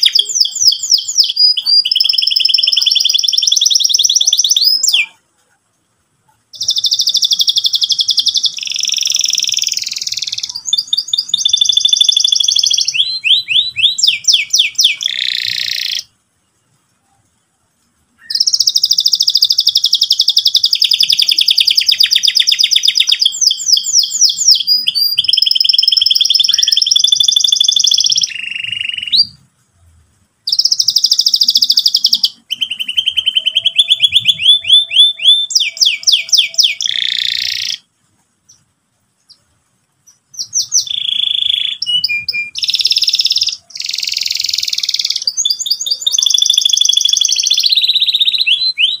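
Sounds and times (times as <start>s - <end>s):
canary singing trills: 0.0s - 29.7s, 30.4s - 49.0s.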